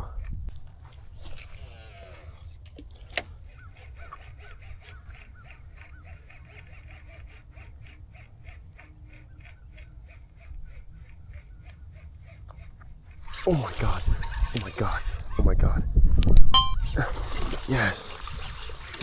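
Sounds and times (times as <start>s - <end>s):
fishing reel ticking: 0.0s - 19.0s
sharp reel click: 0.5s - 15.2s.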